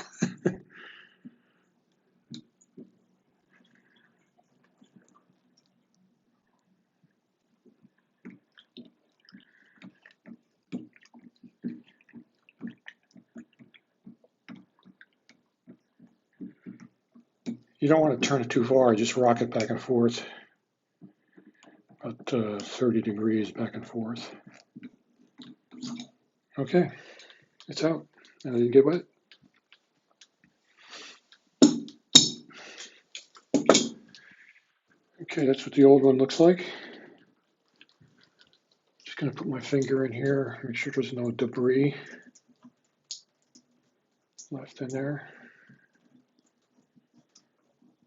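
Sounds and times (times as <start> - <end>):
water dripping: 0.0 - 48.0
sharp knocks of hard objects: 31.6 - 32.5, 33.5 - 34.0.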